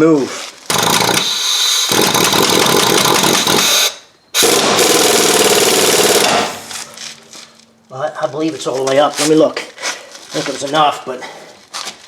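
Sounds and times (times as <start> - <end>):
impact wrench running: 0.7 - 6.9.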